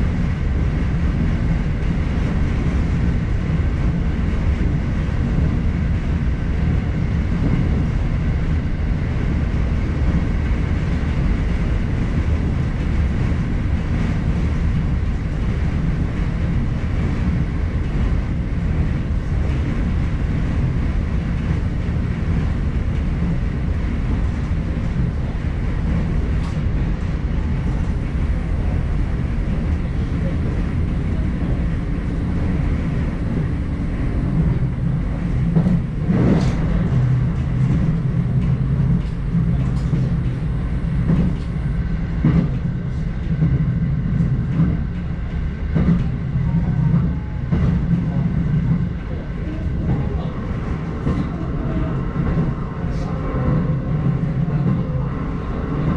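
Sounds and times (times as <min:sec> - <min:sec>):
wheels rumbling on rails: 0:00.0 - 0:55.9.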